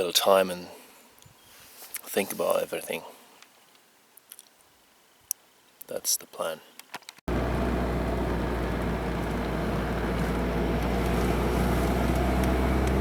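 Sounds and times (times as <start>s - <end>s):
car engine and road noise: 7.3s - 13.0s.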